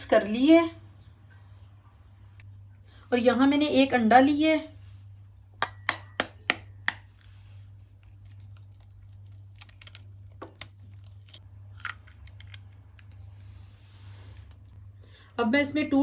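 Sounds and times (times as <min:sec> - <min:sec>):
egg tapping on bowl rim: 0:05.6 - 0:07.1.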